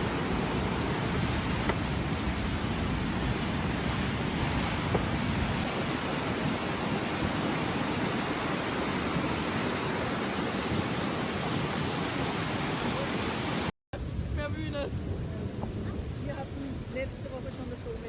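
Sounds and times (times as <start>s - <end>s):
floodwater rushing: 0.0s - 13.7s.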